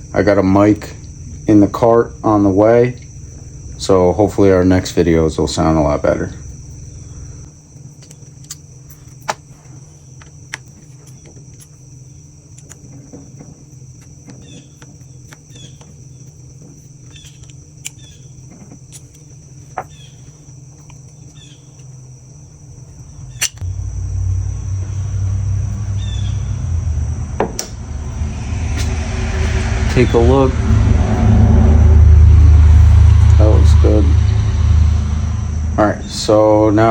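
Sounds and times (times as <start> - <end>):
loud low rumble: 0.0 - 7.5, 23.0 - 36.9.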